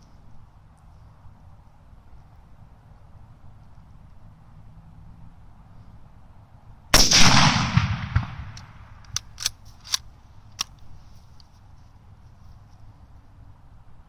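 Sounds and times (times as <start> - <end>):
rifle shot echoing: 6.9 - 9.4
rifle bolt clicks: 8.2 - 10.9.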